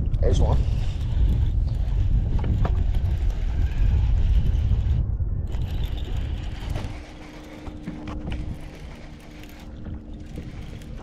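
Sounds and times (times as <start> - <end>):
heavy low rumble: 0.0 - 11.0
fishing reel cranking: 0.6 - 11.0.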